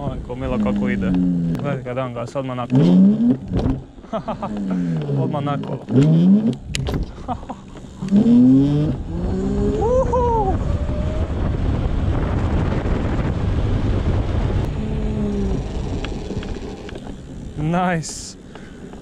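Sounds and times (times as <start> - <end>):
road noise: 0.0 - 19.0
wind rushing over microphone: 8.3 - 17.7.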